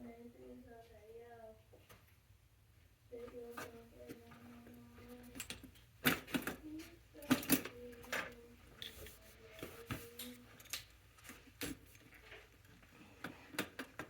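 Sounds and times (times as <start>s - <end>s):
hand tools and metal parts clinking: 10.2s - 12.4s.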